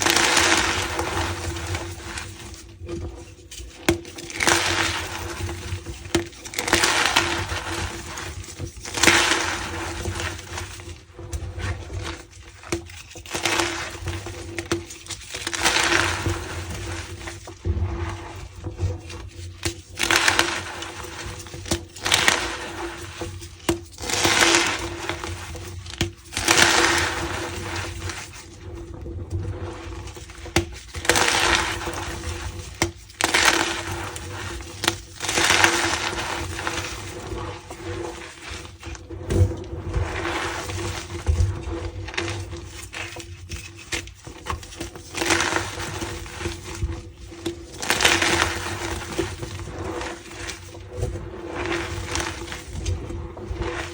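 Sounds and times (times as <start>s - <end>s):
chalk crumbling with squeaky crunch: 3.3s - 17.6s, 29.8s - 39.0s, 39.9s - 46.9s.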